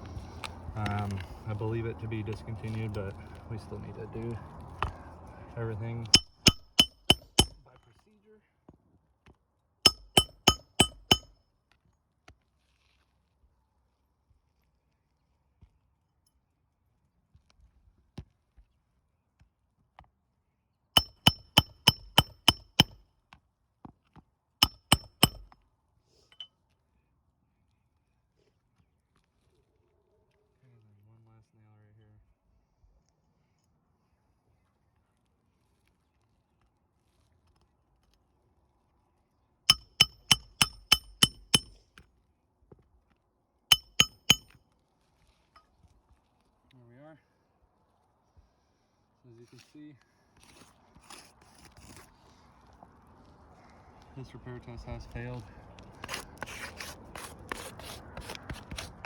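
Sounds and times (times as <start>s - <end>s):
hammer driving nails: 6.2s - 7.6s, 9.9s - 11.3s, 21.0s - 23.0s, 24.6s - 25.6s, 39.7s - 41.8s, 43.7s - 44.5s.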